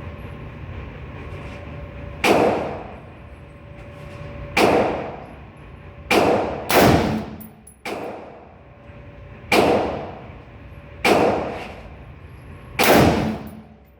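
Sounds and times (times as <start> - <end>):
gunshots ringing: 6.1 - 8.2, 12.8 - 13.7.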